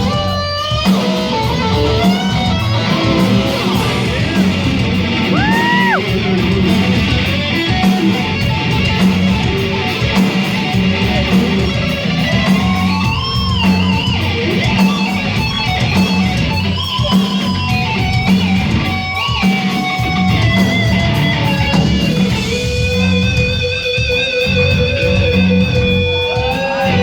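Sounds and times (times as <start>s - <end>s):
bass: 0.0s - 27.0s
distorted electric lead guitar: 0.0s - 27.0s
drums: 0.0s - 27.0s.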